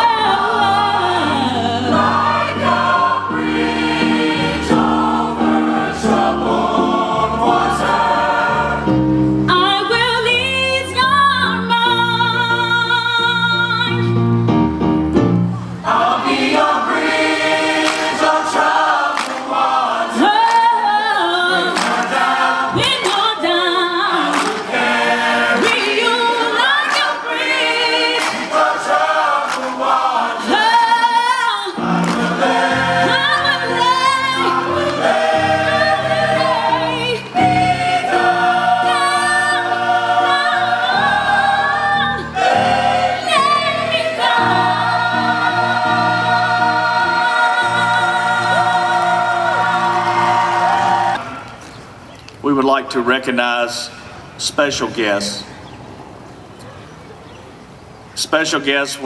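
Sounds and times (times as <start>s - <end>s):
choir singing: 0.0s - 10.1s, 15.7s - 51.5s.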